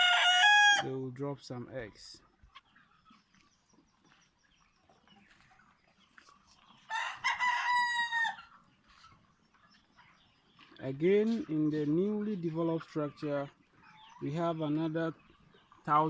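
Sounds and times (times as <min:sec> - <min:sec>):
flock of chickens: 0:00.0 - 0:16.0.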